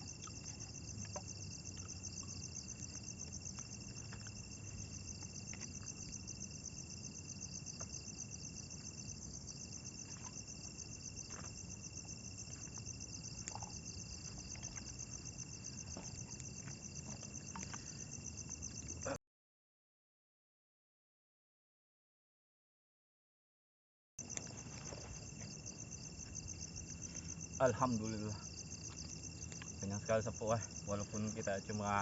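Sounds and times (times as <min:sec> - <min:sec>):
cricket pulsing trill: 0:00.0 - 0:19.2, 0:24.2 - 0:32.0
insect high whine: 0:24.2 - 0:32.0.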